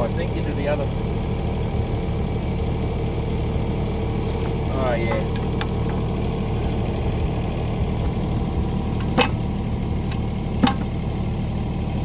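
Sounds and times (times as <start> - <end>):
excavator engine idling: 0.0 - 12.0
sharp metal knocks: 9.0 - 9.4, 10.1 - 10.9.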